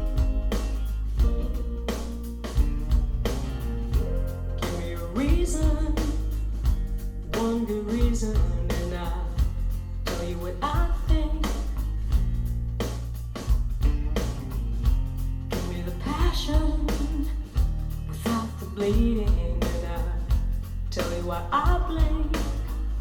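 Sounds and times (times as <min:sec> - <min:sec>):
rock song through speakers: 0:00.0 - 0:23.0
woman singing: 0:04.5 - 0:06.5, 0:07.3 - 0:11.9, 0:15.6 - 0:22.9.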